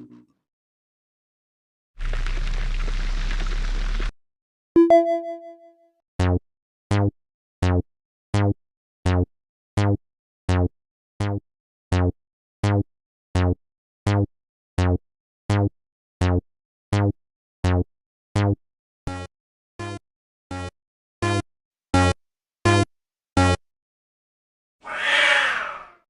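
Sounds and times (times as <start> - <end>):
synthesized crossing bell tones: 4.8 - 5.7.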